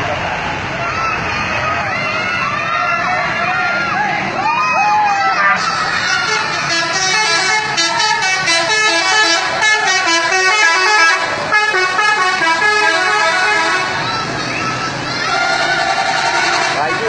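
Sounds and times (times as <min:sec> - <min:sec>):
bus multi-tone horn tune: 0:05.4 - 0:17.0.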